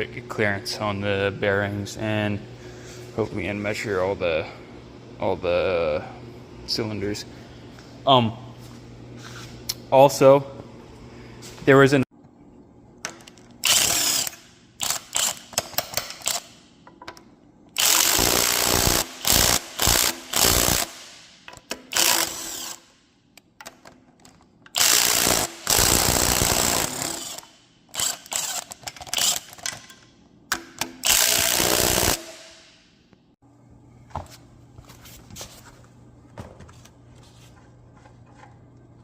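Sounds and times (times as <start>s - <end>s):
power tool bursts: 13.6s - 15.4s, 17.8s - 21.2s, 21.9s - 22.9s, 24.8s - 29.4s, 31.0s - 32.6s.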